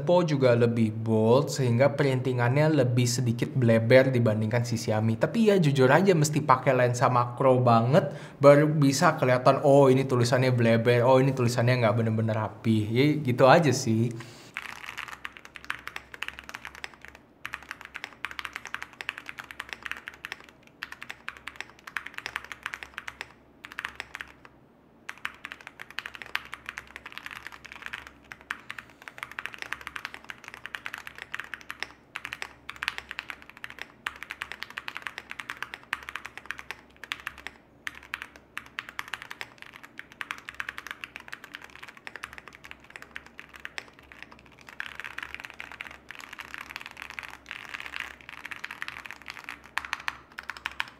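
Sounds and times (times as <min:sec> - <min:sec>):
mechanical keyboard typing: 0:14.5 - 0:24.5, 0:25.1 - 0:50.9.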